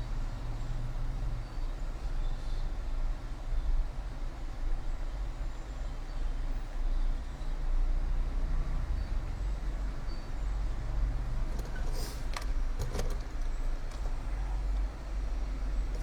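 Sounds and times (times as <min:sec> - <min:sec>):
hot-air station blowing hum: 0:11.2 - 0:16.0.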